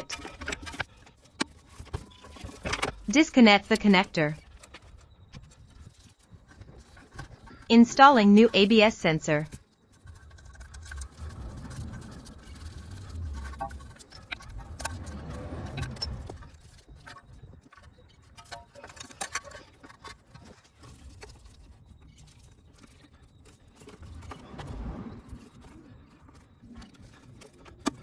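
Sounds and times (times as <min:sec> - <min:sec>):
low rumbling handling noise: 0:10.1 - 0:17.5.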